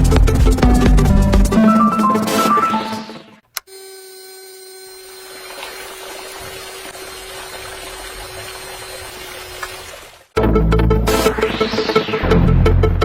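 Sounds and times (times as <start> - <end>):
electric water pump humming: 3.6 - 10.4
rushing water: 5.4 - 10.4.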